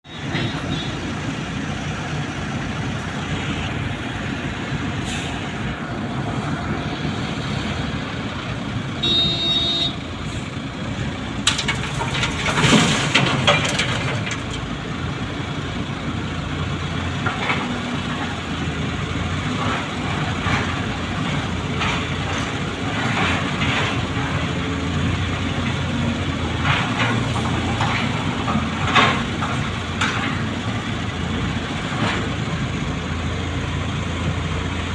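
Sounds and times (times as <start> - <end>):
wheel loader diesel engine: 0.0 - 34.9
clanks: 11.4 - 14.8, 26.5 - 30.7.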